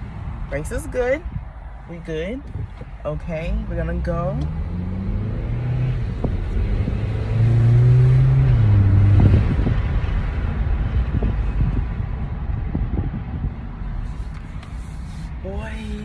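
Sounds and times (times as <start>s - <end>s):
road rumble: 0.0s - 16.0s
car engine accelerating: 3.4s - 13.3s.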